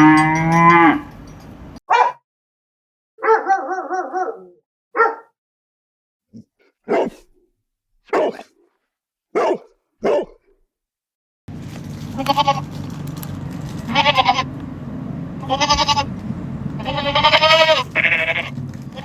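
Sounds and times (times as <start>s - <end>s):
dog barking: 1.9s - 2.2s, 3.2s - 5.4s, 6.8s - 7.4s, 8.0s - 8.6s, 9.3s - 10.5s.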